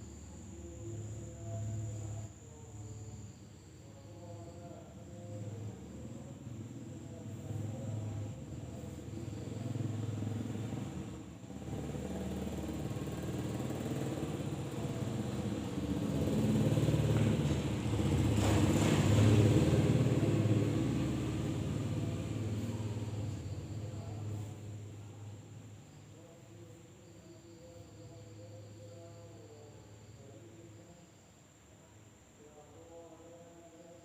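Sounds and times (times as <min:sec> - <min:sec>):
high insect trill: 0:00.0 - 0:18.4, 0:19.1 - 0:34.0
vehicle engine passing by: 0:05.3 - 0:25.8.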